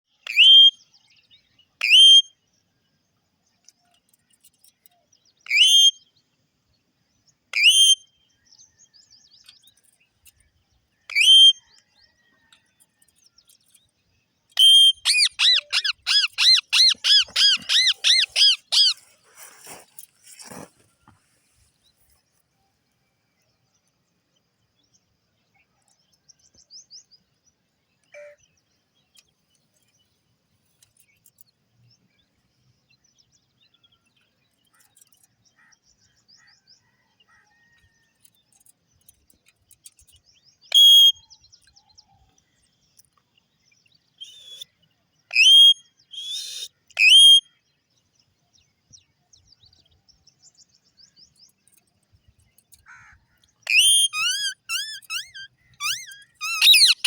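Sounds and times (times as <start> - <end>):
parrot chirps and twitters: 14.6 - 19.0, 40.7 - 41.1, 45.3 - 47.4, 53.6 - 57.0
parrot loud sharp call: 14.6 - 19.0, 45.3 - 47.4, 53.7 - 57.0.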